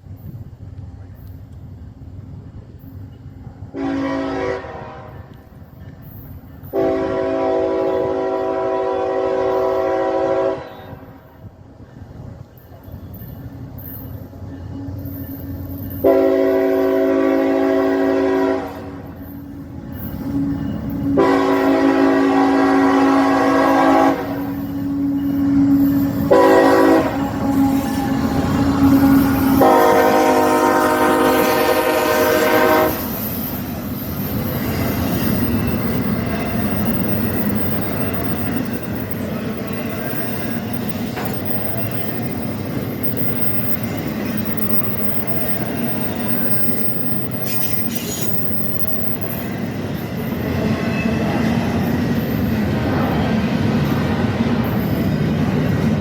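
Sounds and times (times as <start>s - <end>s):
train rumbling past: 0.0s - 56.0s
locomotive air horn: 3.8s - 5.3s, 6.7s - 11.2s, 16.0s - 33.4s.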